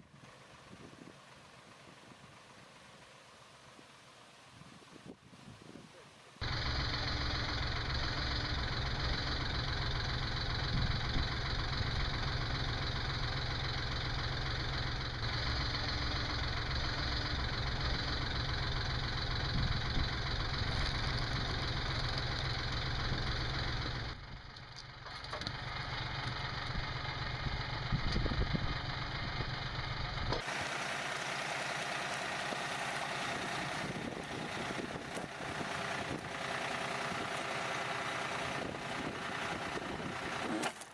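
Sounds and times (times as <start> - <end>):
tractor engine running: 6.4 - 40.9.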